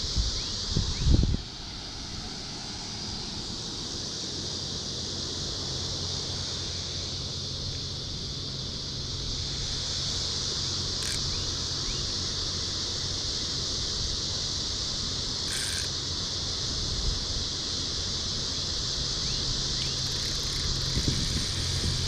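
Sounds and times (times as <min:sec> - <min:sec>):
wind rumble on microphone: 0:00.0 - 0:01.6, 0:19.8 - 0:22.0
high-pitched insect chorus: 0:00.0 - 0:22.0.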